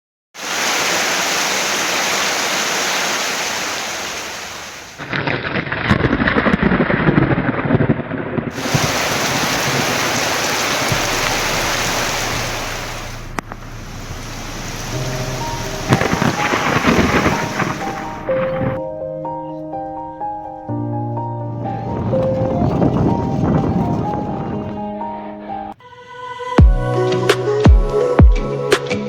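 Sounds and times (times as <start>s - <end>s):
rain falling steadily: 0.4s - 5.1s, 8.5s - 18.7s.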